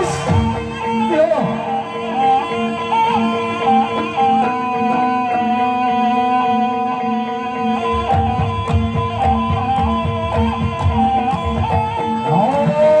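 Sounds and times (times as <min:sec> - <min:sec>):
low drum beats: 0:00.0 - 0:01.0, 0:07.9 - 0:12.1
wavering melody over drone: 0:00.0 - 0:13.0.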